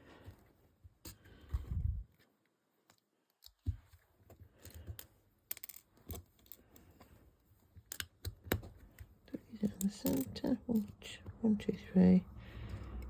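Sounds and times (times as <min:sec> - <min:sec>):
plastic blocks clicking: 0:04.6 - 0:06.6.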